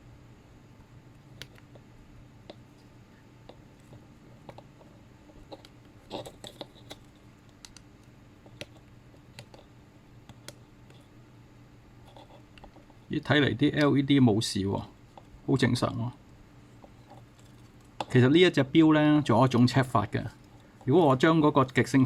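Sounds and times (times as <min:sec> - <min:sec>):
faint low hum: 0:00.0 - 0:22.0
small clicks and taps: 0:01.4 - 0:01.8, 0:02.4 - 0:11.1, 0:12.1 - 0:12.9.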